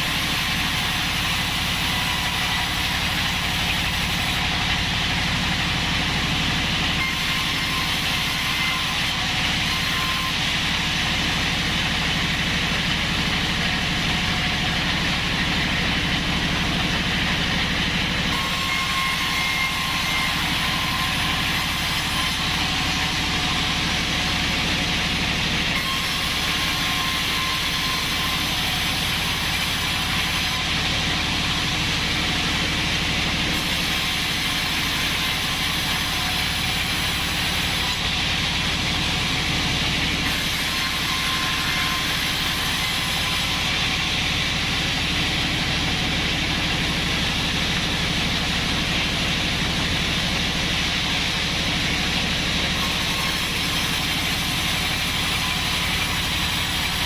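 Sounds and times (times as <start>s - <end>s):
band saw cutting wood: 0.0s - 57.0s
low motor hum: 10.4s - 34.1s.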